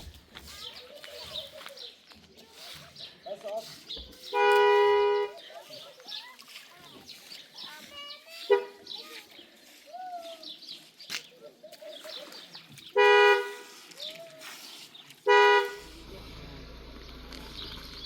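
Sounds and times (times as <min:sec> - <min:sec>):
vehicle horn honking: 0:04.3 - 0:05.4, 0:08.5 - 0:08.8, 0:13.0 - 0:13.7, 0:15.3 - 0:16.5
low steady rumble: 0:15.8 - 0:18.0.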